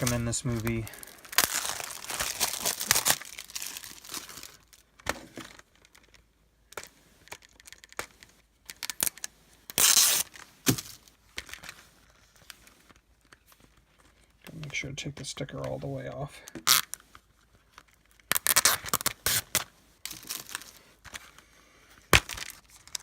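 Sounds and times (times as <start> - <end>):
plastic wrapping tearing and crinkling: 0.0 - 6.3, 7.2 - 11.8, 16.6 - 21.3, 22.1 - 23.0.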